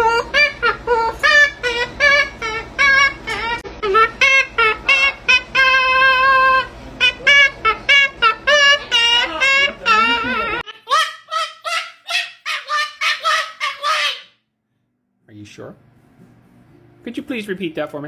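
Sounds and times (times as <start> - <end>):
parrot calling: 0.0 - 14.4
background hum: 0.0 - 17.7.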